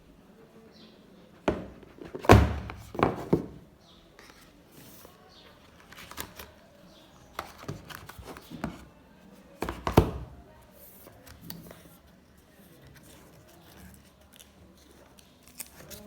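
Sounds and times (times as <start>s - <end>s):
cardboard and plastic rustling: 1.4s - 3.6s, 4.2s - 6.6s, 7.2s - 8.9s.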